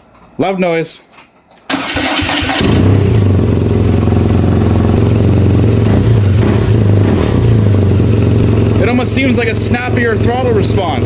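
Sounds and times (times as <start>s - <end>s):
motorcycle electric starter cranking: 1.7s - 3.6s
motorcycle engine idling: 2.4s - 11.0s.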